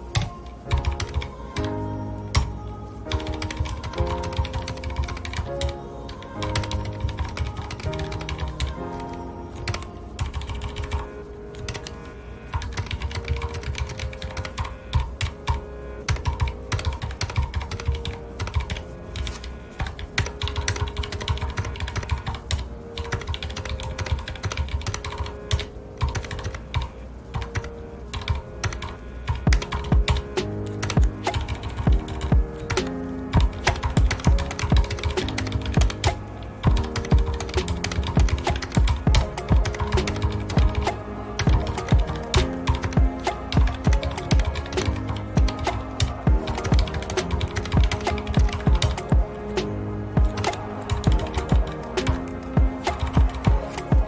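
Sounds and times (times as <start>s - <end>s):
soft background music: 0.0s - 54.0s
mechanical keyboard typing: 9.6s - 11.0s, 12.5s - 30.2s, 30.8s - 54.0s.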